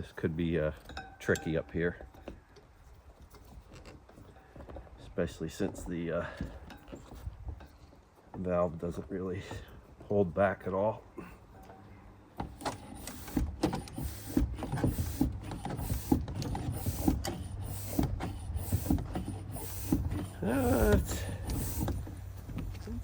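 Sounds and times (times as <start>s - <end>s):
air pump strokes: 12.4s - 22.7s.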